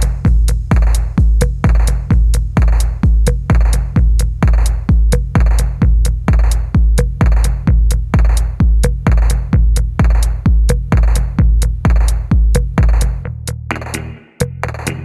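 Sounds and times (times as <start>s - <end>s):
heavy kick drum: 0.0s - 15.0s
ticking hi-hats: 0.0s - 15.0s
electronic music: 10.0s - 15.0s
snare hits: 13.7s - 15.0s.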